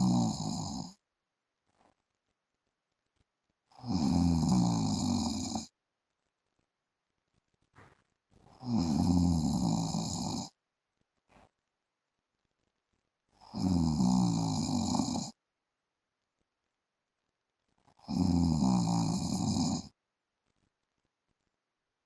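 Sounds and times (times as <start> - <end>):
man snoring: 0.0 - 1.0, 3.7 - 5.7, 8.6 - 10.5, 13.4 - 15.4, 18.0 - 19.9.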